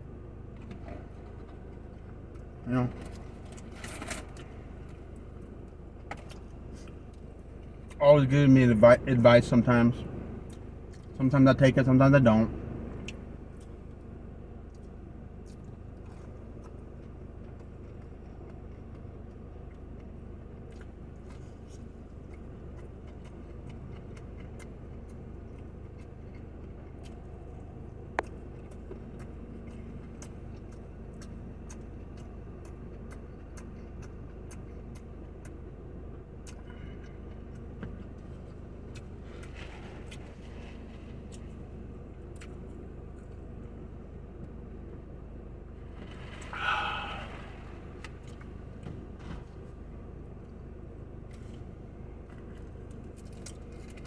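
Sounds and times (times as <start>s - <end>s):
low background hum: 0.0s - 54.0s
eating sounds: 14.7s - 35.6s, 45.7s - 48.8s.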